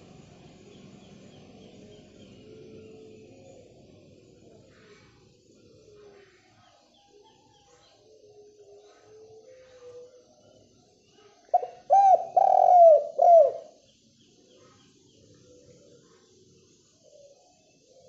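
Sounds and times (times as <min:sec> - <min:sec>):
dove cooing: 0:11.4 - 0:13.8.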